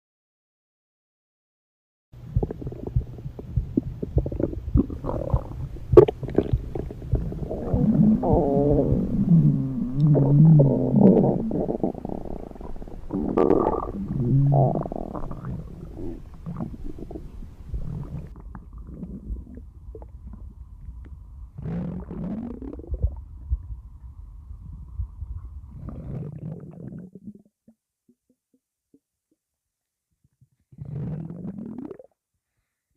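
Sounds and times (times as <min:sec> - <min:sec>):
stomach grumbling: 0:02.3 - 0:23.3, 0:25.7 - 0:28.4, 0:30.5 - 0:32.2.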